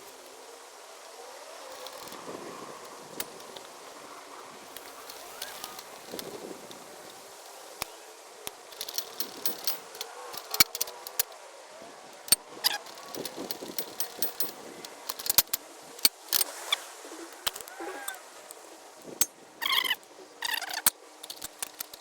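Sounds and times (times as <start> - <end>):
metal parts clinking and knocking: 8.4 - 11.3, 12.2 - 16.5, 19.2 - 22.0.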